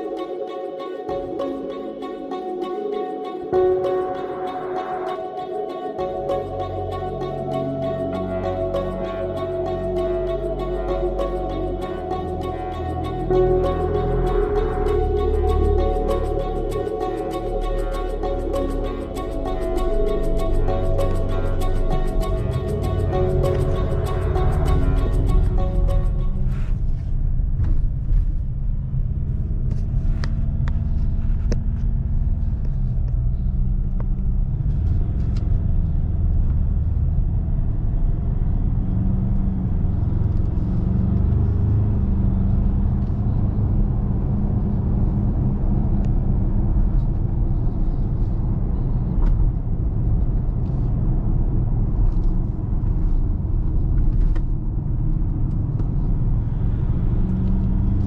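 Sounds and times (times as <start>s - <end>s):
road rumble: 6.0s - 58.0s.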